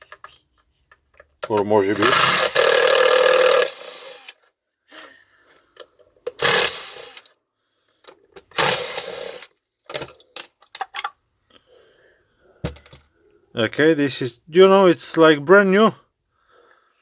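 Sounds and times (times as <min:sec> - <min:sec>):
small clicks and knocks of parts: 0:00.0 - 0:01.7, 0:08.0 - 0:08.6, 0:09.8 - 0:11.6
power tool running: 0:02.0 - 0:04.4, 0:06.4 - 0:07.3, 0:08.6 - 0:09.5.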